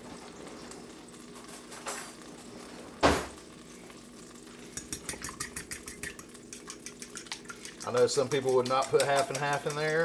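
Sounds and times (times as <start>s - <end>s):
butter sizzling in a skillet: 0.0s - 10.0s
fork whisking against a bowl: 4.6s - 10.0s.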